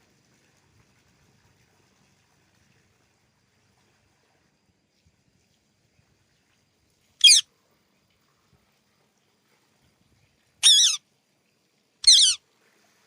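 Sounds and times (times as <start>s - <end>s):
parakeet shrill calls: 7.2s - 7.4s, 10.6s - 11.0s, 12.0s - 12.4s.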